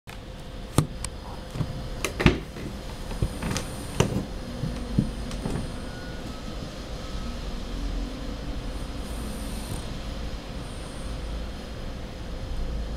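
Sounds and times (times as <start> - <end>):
steady low hum: 0.1 - 12.9
dog snoring: 8.5 - 11.5.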